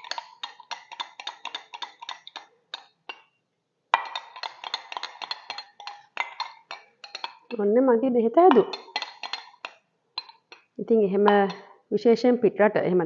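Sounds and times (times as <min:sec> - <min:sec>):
teaspoon clinking against container: 0:00.0 - 0:03.3, 0:04.0 - 0:07.6, 0:08.5 - 0:11.7.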